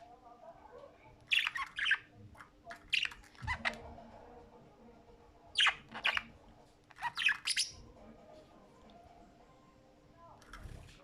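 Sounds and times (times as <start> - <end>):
budgerigars chirping and squawking: 1.3 - 2.1, 2.9 - 3.8, 5.6 - 6.3, 7.0 - 7.8.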